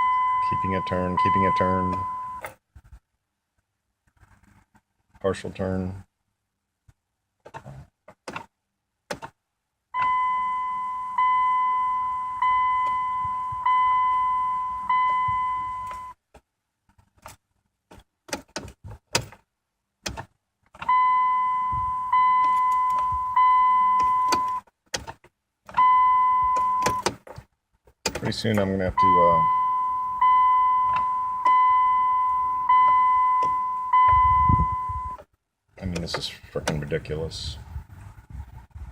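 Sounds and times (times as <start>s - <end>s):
dashboard warning chime dinging: 0.0s - 2.5s, 9.9s - 16.2s, 20.8s - 24.7s, 25.7s - 27.2s, 28.1s - 35.3s.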